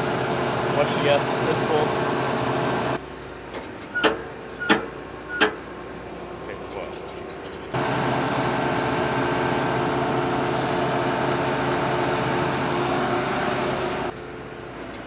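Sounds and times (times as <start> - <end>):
combine engine hum: 0.0 - 15.0
threshing machinery whirring: 7.8 - 14.2.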